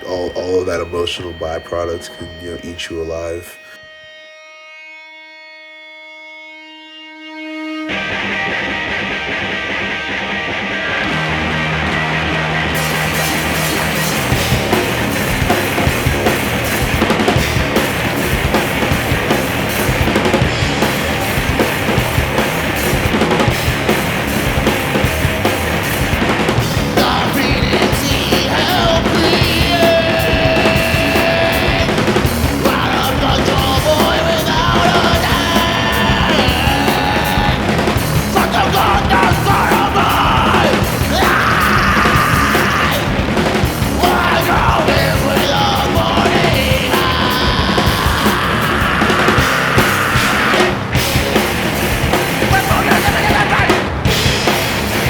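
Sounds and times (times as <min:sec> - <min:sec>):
person singing: 0:00.0 - 0:03.8, 0:26.7 - 0:43.2, 0:43.8 - 0:50.8, 0:52.4 - 0:53.8
heavy rock band playing: 0:06.6 - 0:55.0.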